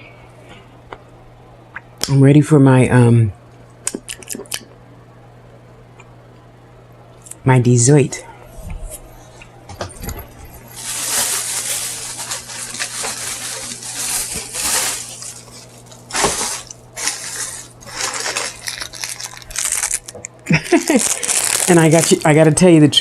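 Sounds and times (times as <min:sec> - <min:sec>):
faint steady hum: 0:00.0 - 0:23.0
plastic packaging crinkling: 0:10.1 - 0:22.7.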